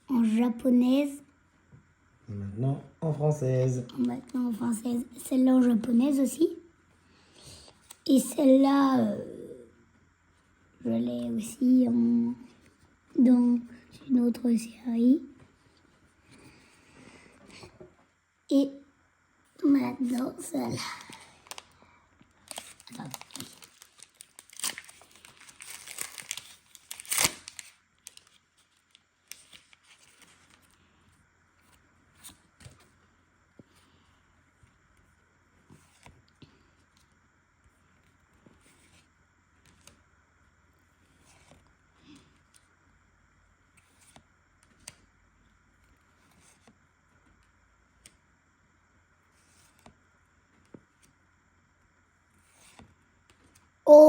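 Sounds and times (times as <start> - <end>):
foil wrapper crinkling and tearing: 21.0 - 21.8, 22.4 - 30.6
cards and packaging clicking: 22.4 - 30.6.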